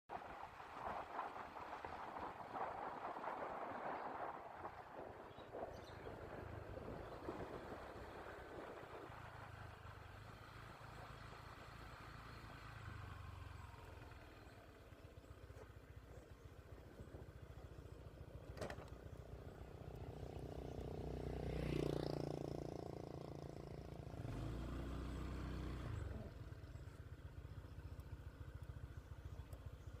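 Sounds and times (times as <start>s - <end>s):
distant vehicle engine passing: 19.7s - 26.7s.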